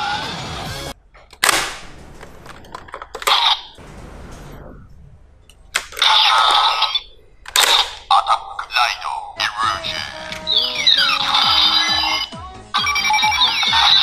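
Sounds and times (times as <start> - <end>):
toy gun electronic gunshots: 5.8 - 8.2.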